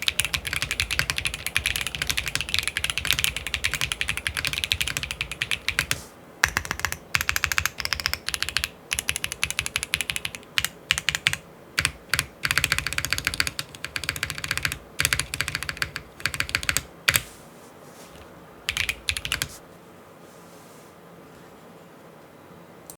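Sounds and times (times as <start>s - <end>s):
typing on mechanical keyboard: 0.0s - 17.3s, 18.2s - 19.5s.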